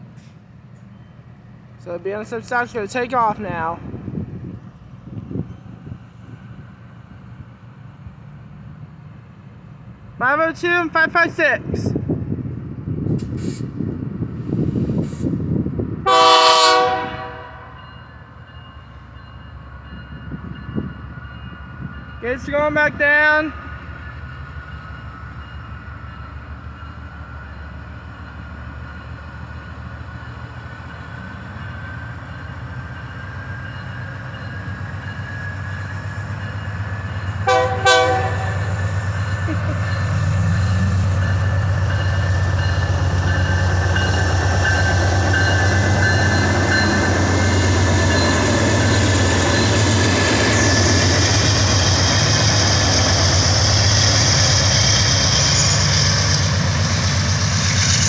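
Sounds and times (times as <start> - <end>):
diesel locomotive engine drone: 0.0 - 58.0
locomotive air horn blast: 16.0 - 17.8, 37.4 - 38.6.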